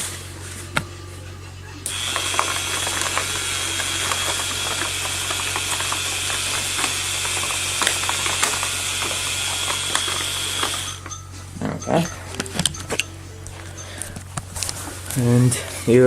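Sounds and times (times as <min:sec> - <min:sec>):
electric motor whine: 0:01.8 - 0:11.1
plastic gears clicking: 0:01.9 - 0:11.2.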